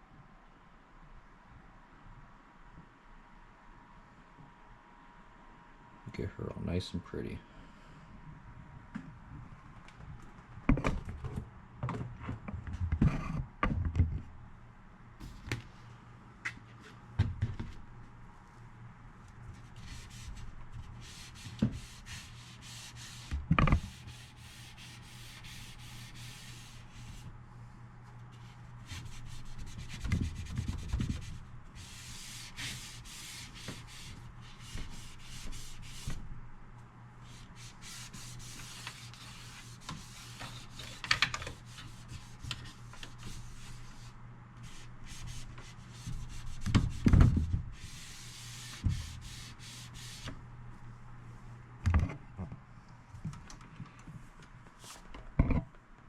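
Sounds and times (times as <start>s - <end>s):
scratchy rubbing on cabinet: 19.6s - 27.3s, 28.3s - 36.2s, 37.2s - 50.3s.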